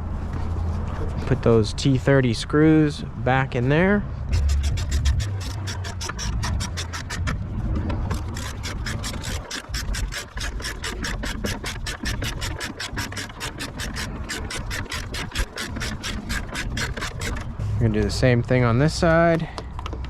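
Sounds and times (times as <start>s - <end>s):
ratchet clicking: 8.1s - 17.5s.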